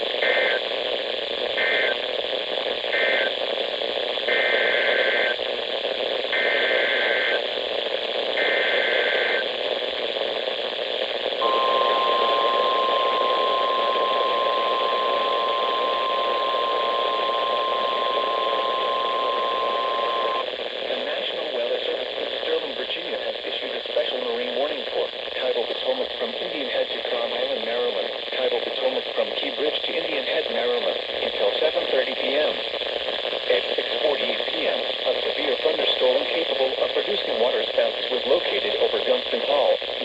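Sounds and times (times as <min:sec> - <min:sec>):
radio static: 0:00.0 - 0:40.0
warbling two-tone data bursts: 0:11.4 - 0:20.4
steady warning alarm tone: 0:11.4 - 0:20.5.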